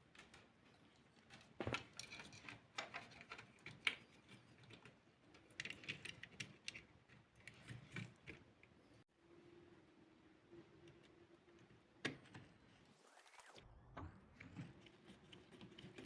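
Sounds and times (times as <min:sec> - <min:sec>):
small parts clicking and scraping: 0:00.0 - 0:08.8, 0:14.6 - 0:16.0.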